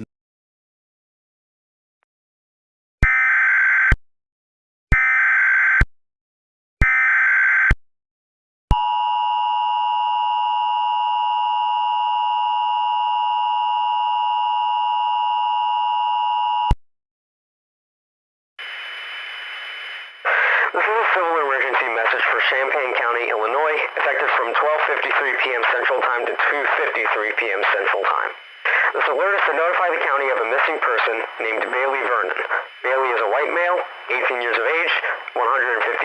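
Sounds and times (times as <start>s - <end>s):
radio hiss: 18.6s - 36.0s
screechy digital data bursts: 20.3s - 36.0s.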